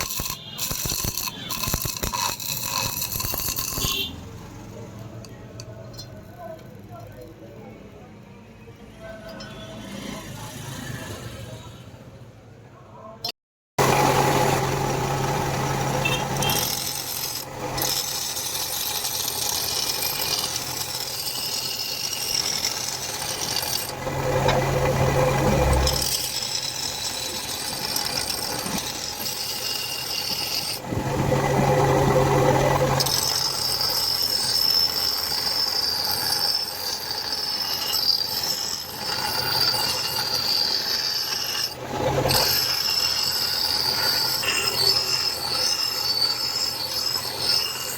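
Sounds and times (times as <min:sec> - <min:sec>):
tool scraping steel: 0:00.0 - 0:04.2, 0:15.2 - 0:47.9
low hum: 0:23.9 - 0:26.2, 0:30.8 - 0:33.4.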